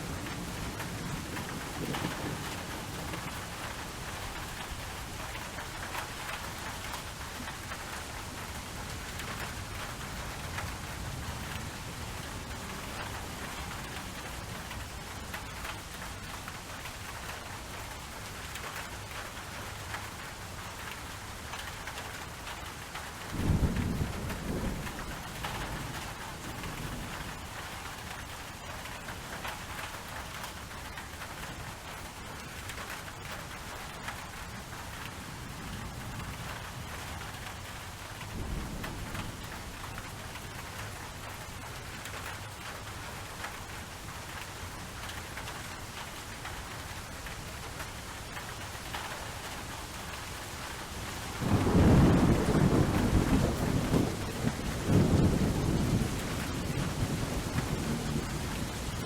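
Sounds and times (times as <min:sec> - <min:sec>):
thunder rumble: 0:00.0 - 0:07.9, 0:35.6 - 0:41.0, 0:48.4 - 0:59.0
steady rainfall: 0:00.0 - 0:59.0.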